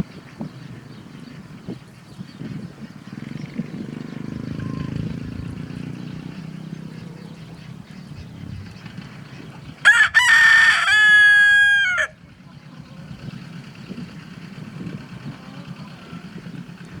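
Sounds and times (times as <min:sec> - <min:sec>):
rooster crowing: 0:09.8 - 0:12.2.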